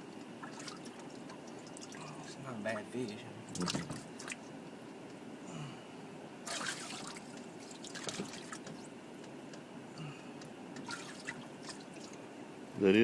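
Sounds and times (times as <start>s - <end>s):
water trickling and dripping: 0.4s - 2.5s
water splash: 6.5s - 8.8s, 10.8s - 12.1s.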